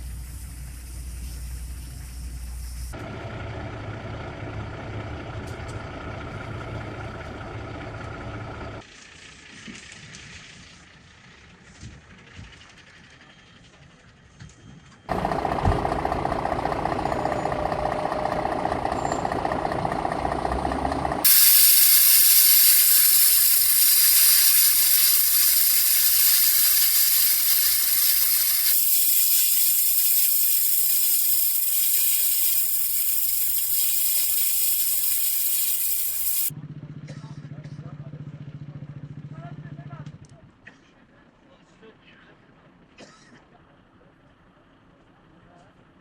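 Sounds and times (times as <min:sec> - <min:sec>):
mechanical rumble: 0:15.1 - 0:36.5
water spraying from fire hose: 0:21.2 - 0:36.5.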